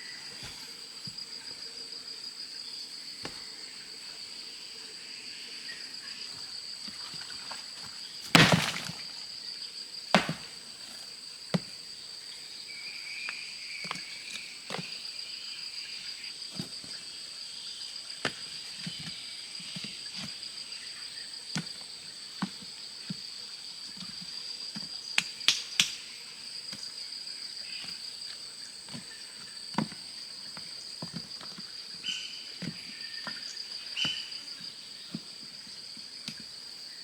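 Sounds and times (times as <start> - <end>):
insects droning: 0.0 - 37.0
sharp knocks: 8.3 - 9.1, 10.2 - 10.5.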